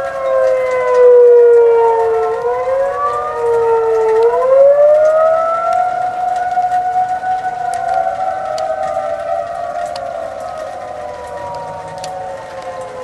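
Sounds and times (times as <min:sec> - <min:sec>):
tornado warning sirens: 0:00.0 - 0:13.0.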